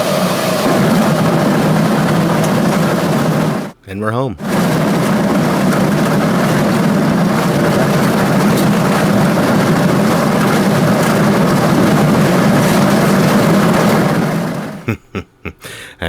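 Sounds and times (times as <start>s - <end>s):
small plane cabin engine drone: 0.0s - 3.8s, 4.4s - 14.8s.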